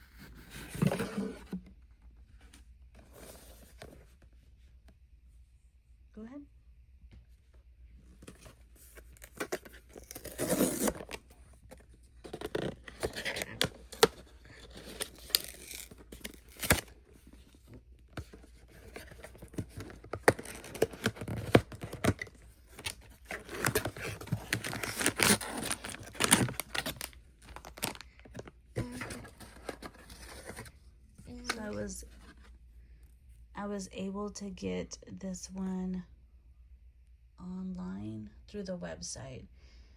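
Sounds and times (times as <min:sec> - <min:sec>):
packaging tearing and crinkling: 0:09.2 - 0:11.2, 0:12.3 - 0:17.0, 0:18.7 - 0:30.6.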